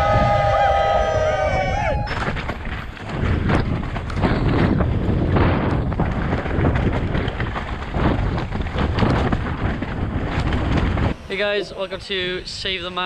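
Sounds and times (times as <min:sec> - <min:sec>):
wind buffeting microphone: 0:00.0 - 0:13.0
knocks and crackles: 0:02.0 - 0:11.2.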